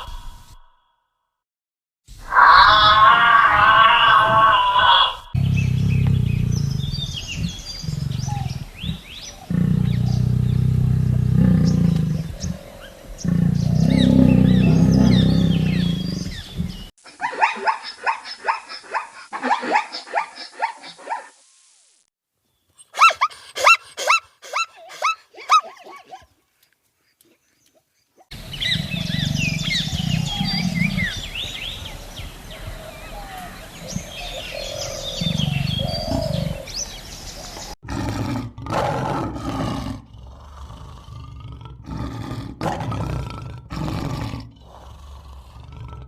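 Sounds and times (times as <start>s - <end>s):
big cat roaring: 2.3s - 16.9s, 28.4s - 31.4s, 33.8s - 36.7s, 37.8s - 46.0s
birds chirping: 2.4s - 21.1s, 22.5s - 37.8s
animal yelping calls: 23.0s - 26.2s.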